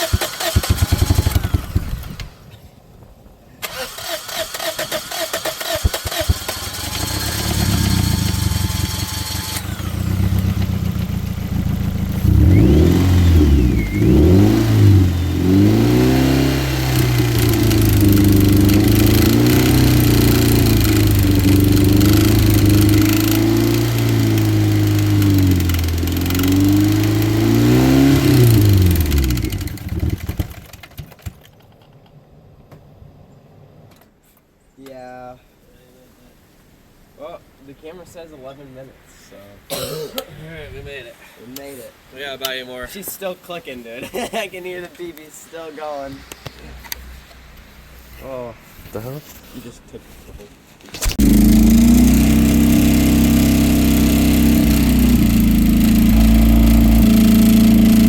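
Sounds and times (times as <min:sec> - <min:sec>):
engine running rough and revving: 0:06.3 - 0:30.7, 0:51.1 - 0:58.0.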